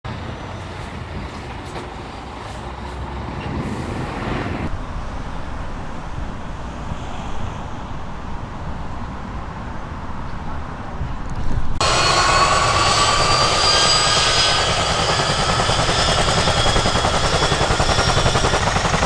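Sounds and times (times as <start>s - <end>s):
helicopter low rumble: 4.7s - 19.0s.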